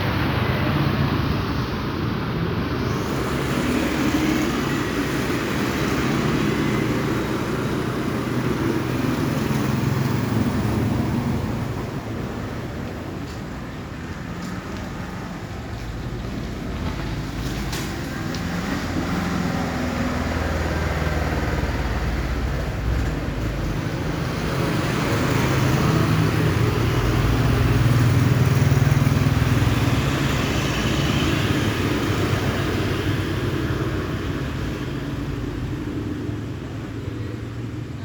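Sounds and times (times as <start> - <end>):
road noise: 0.0 - 38.0
vehicle engine passing by: 14.4 - 35.8.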